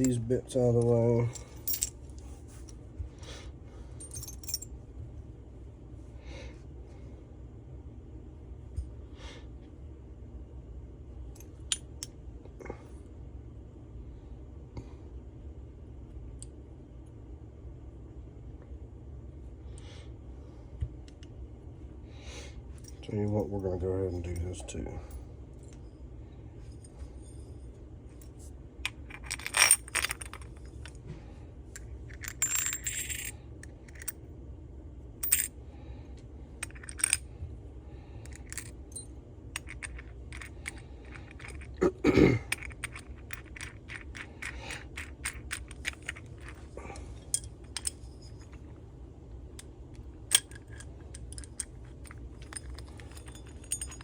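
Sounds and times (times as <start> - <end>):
low steady hum: 0.0 - 54.0
metal parts and tools clinking: 0.8 - 2.0, 4.0 - 4.6, 28.8 - 31.0, 32.1 - 33.3, 35.2 - 35.5, 36.6 - 37.2, 38.2 - 41.8, 42.5 - 48.8, 49.6 - 54.0.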